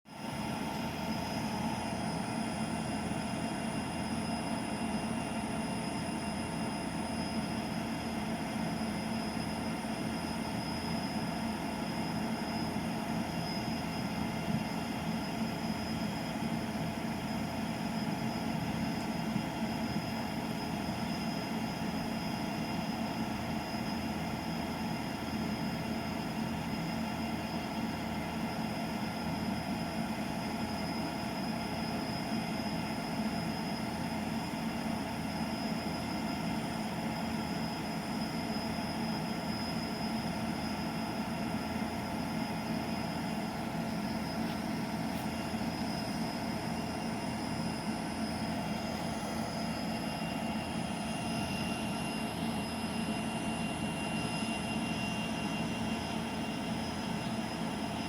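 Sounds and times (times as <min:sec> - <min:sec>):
faint high whining tones: 0:00.2 - 0:58.0.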